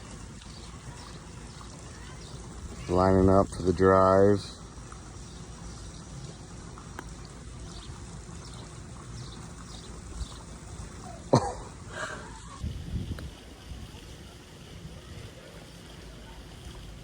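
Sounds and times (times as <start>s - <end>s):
trickle of running water: 0.0s - 17.0s
putter striking golf ball: 6.8s - 7.3s.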